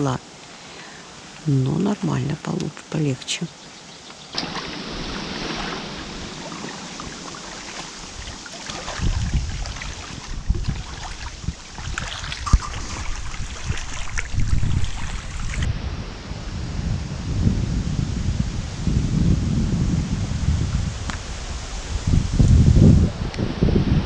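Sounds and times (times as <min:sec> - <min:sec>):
wind buffeting microphone: 0:04.3 - 0:24.0
waves splashing on rocks: 0:04.4 - 0:15.7.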